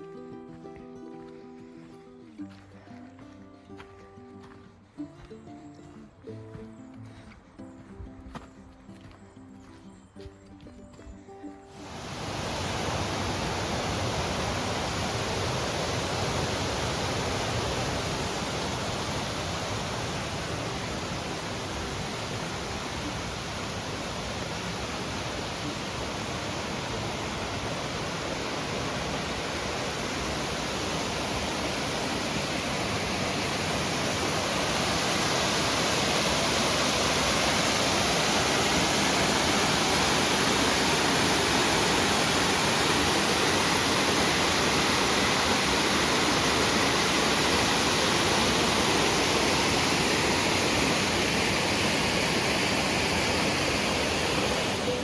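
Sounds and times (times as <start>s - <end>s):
rushing water: 0.0s - 11.0s, 11.6s - 55.0s.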